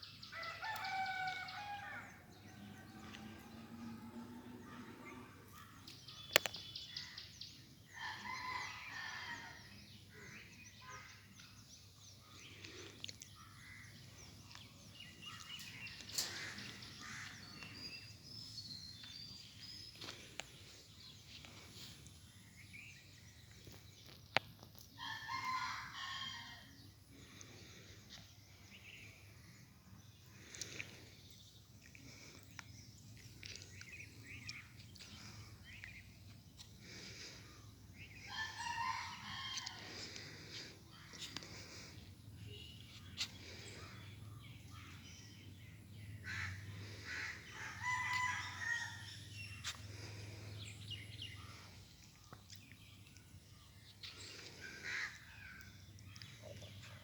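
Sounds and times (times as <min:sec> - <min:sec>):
faint rooster crowing: 0:00.2 - 0:05.7, 0:07.9 - 0:10.4, 0:25.0 - 0:26.8, 0:38.2 - 0:40.4, 0:46.3 - 0:49.2.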